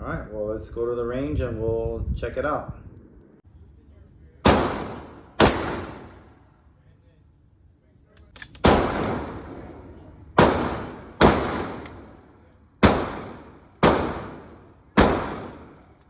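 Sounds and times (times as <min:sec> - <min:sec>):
pistol shots with echo: 0:04.4 - 0:06.3, 0:08.6 - 0:16.0.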